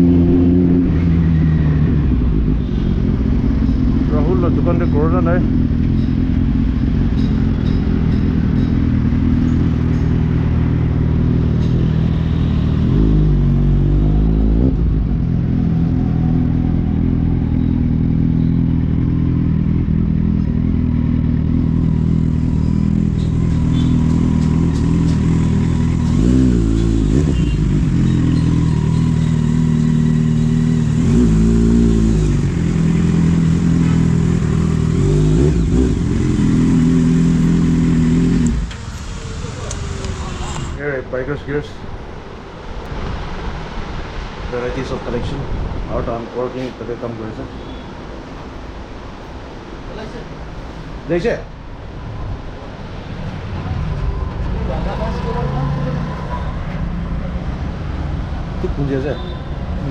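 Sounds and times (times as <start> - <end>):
motorcycle engine running: 0.0 - 13.8, 15.0 - 40.8.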